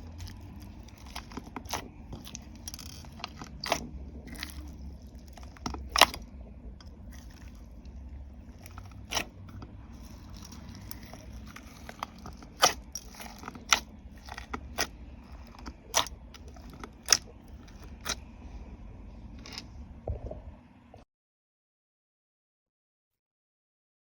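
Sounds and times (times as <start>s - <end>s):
slime popping and crackling: 0.0s - 18.2s
slime squelching: 0.0s - 18.8s.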